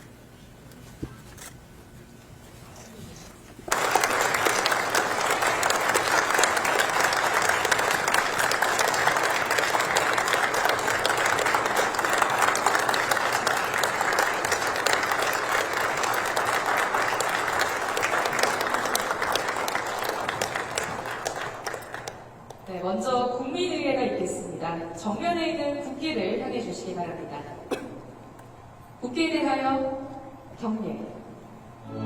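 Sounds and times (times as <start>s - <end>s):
large audience applauding: 3.7s - 22.6s.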